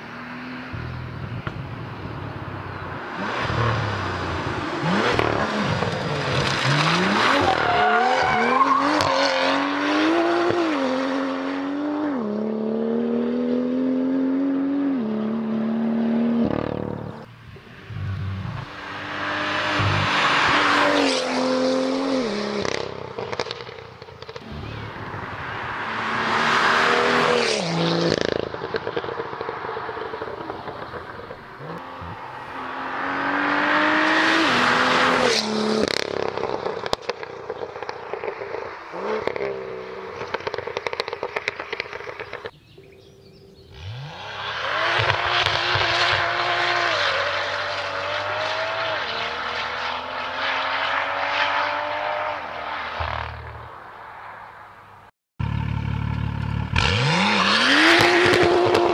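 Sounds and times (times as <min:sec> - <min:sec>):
exhaust crackles and pops: 0:01.4 - 0:02.0, 0:05.0 - 0:07.6, 0:22.6 - 0:24.7, 0:28.1 - 0:31.8, 0:35.8 - 0:39.5, 0:40.1 - 0:42.6, 0:44.9 - 0:46.2
car engine revving hard: 0:03.2 - 0:17.2, 0:18.3 - 0:23.7, 0:24.4 - 0:29.4, 0:31.6 - 0:41.3, 0:43.7 - 0:53.4, 0:56.0 - 0:58.9.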